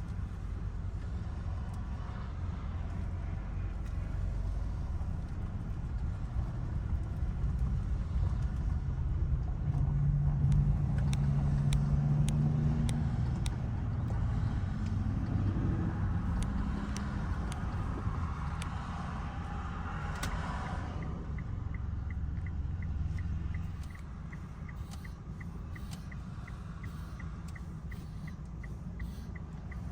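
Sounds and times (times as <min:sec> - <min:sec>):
car engine and road rumble: 0:00.0 - 0:29.9
regular ticking: 0:10.4 - 0:29.9.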